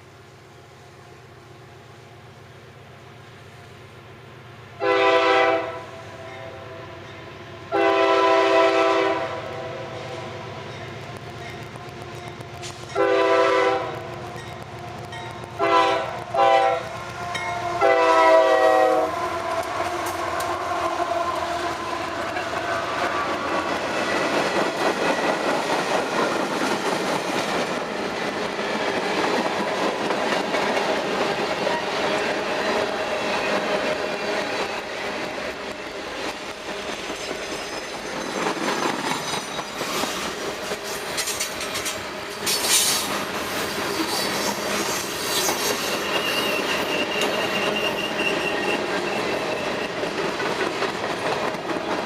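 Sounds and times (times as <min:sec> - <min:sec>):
train rumble: 0:00.0 - 0:52.0
locomotive air horn blasts: 0:04.8 - 0:06.9, 0:07.7 - 0:10.1, 0:12.9 - 0:14.0, 0:15.6 - 0:20.0
wheels clacking over rail joints: 0:19.2 - 0:52.0.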